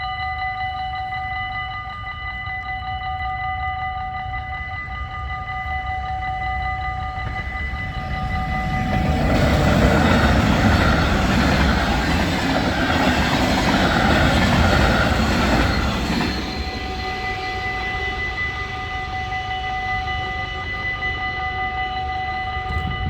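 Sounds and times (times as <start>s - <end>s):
level crossing warning bells: 0.0s - 23.0s
train wheels on rails: 6.2s - 23.0s.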